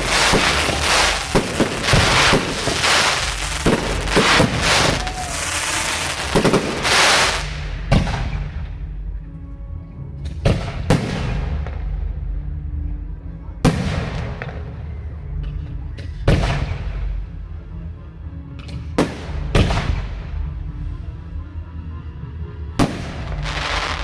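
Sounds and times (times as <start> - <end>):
fireworks crackling: 0.0 - 7.9, 23.0 - 24.0
fireworks bangs: 0.0 - 8.3
music playing: 0.0 - 24.0.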